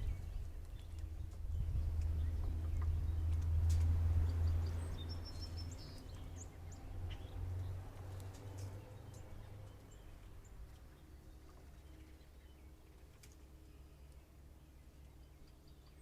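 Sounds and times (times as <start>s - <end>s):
low rumble: 0.0s - 12.0s.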